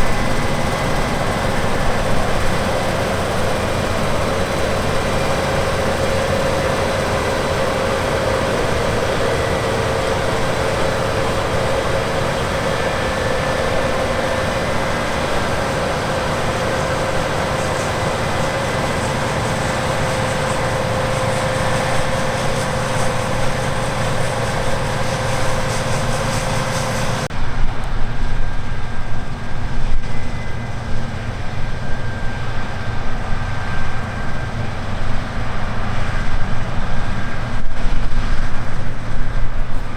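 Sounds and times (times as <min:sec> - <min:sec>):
rough uneven machine noise: 0:00.0 - 0:27.3
harvest machinery engine whine: 0:00.0 - 0:39.9.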